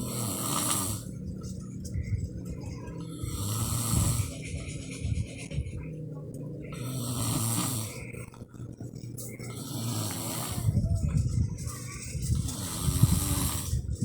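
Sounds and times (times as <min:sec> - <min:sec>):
man snoring: 0:00.0 - 0:01.2, 0:03.0 - 0:04.4, 0:06.7 - 0:08.2, 0:09.5 - 0:10.8, 0:12.4 - 0:13.8.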